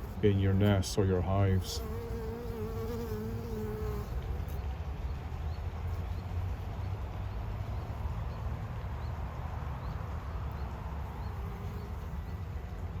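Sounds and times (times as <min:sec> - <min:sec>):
honey bees buzzing: 0:00.0 - 0:04.7, 0:11.0 - 0:13.0.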